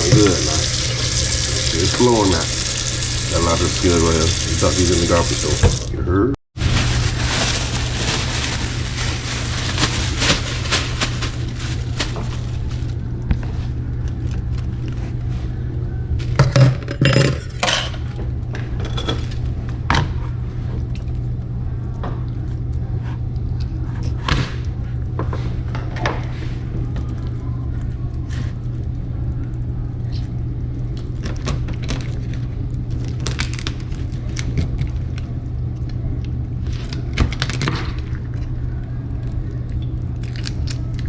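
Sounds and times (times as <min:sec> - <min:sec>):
kitchen tap running: 0:00.0 - 0:06.0
steady low hum: 0:00.0 - 0:41.0.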